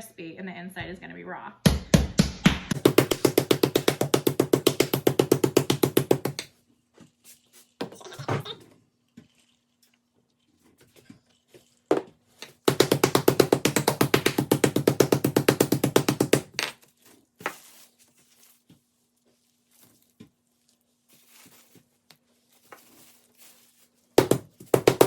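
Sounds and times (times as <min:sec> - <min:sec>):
meat mallet pounding chicken: 0:01.7 - 0:06.5, 0:11.9 - 0:16.6, 0:24.2 - 0:25.0.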